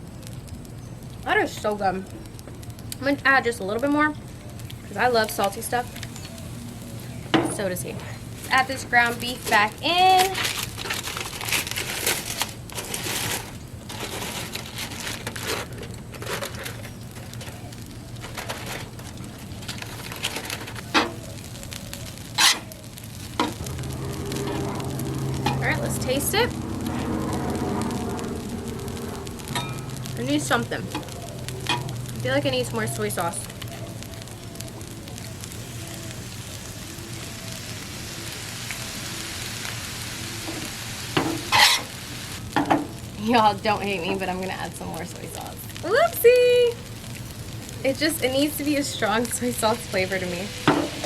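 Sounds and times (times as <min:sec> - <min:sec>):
food sizzling on a griddle: 0:00.0 - 0:51.0
spatula scraping griddle: 0:07.5 - 0:17.5, 0:19.8 - 0:32.2, 0:40.4 - 0:42.0.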